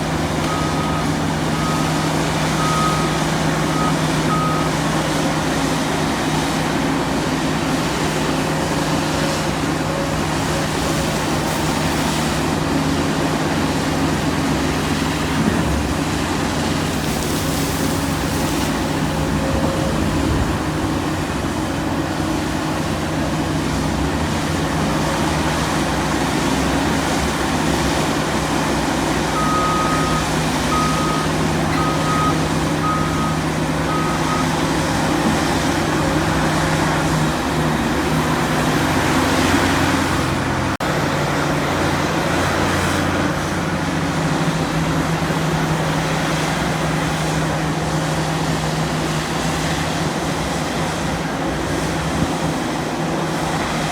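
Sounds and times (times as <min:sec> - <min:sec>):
heavy diesel machinery running: 0:00.0 - 0:53.9
reversing alarm beeping: 0:00.4 - 0:04.9, 0:29.3 - 0:36.5.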